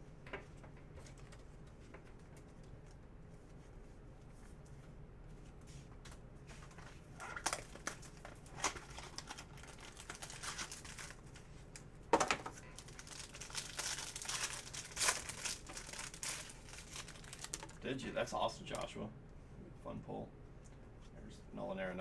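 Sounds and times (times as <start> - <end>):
plastic packaging crinkling: 7.2 - 17.8.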